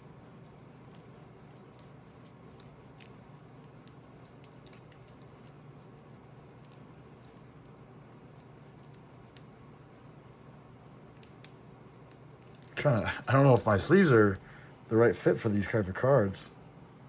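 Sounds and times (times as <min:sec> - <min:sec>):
small clicks of card sleeve: 0:00.5 - 0:05.7.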